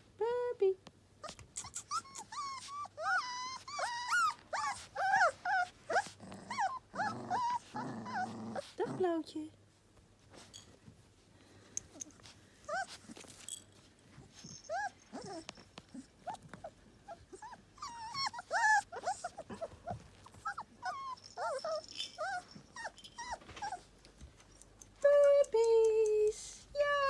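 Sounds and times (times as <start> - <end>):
puppies squeaking and whimpering: 1.2 - 8.8, 14.4 - 23.9.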